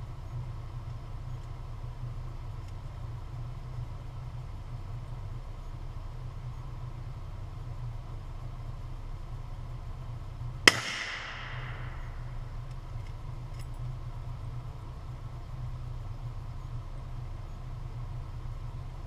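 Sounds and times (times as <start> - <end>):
steady low hum: 0.0 - 19.0
rifle shot echoing: 10.7 - 12.4.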